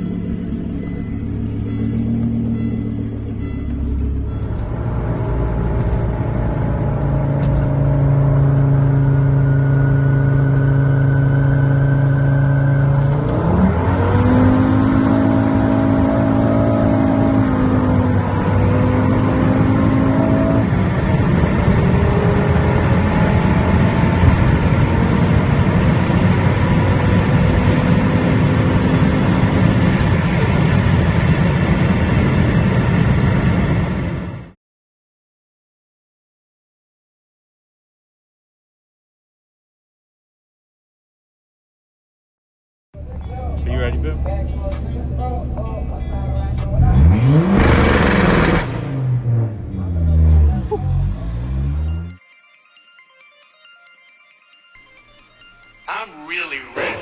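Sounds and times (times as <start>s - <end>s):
car engine revving: 0.0s - 34.2s, 43.8s - 52.2s
road noise: 0.0s - 34.6s, 43.0s - 52.2s.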